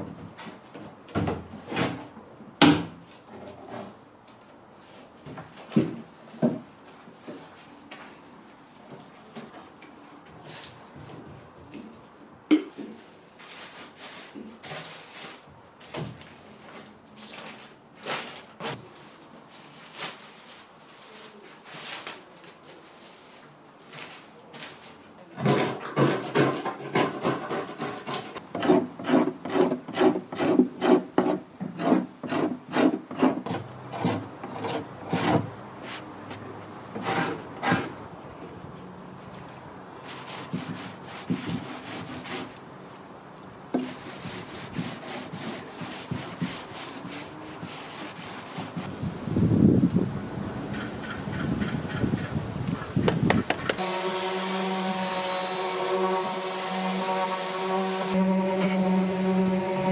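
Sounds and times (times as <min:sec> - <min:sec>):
rasp strokes on wood: 0:25.4 - 0:35.5, 0:43.8 - 0:48.9, 0:53.0 - 0:59.9.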